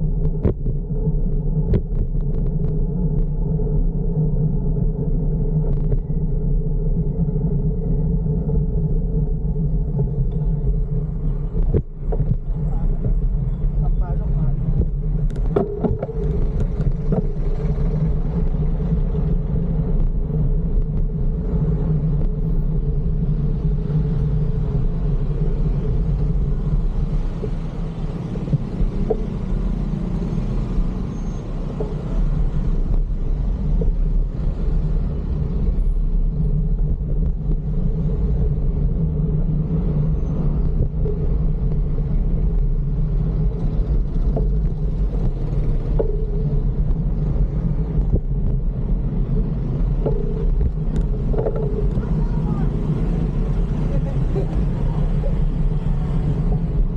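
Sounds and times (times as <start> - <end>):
motor vehicles running: 0.0 - 56.9
road and traffic rumble: 0.0 - 56.9.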